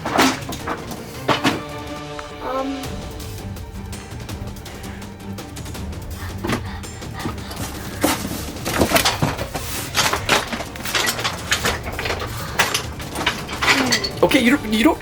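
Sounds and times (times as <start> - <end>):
toys and objects knocking: 0.0 - 1.9.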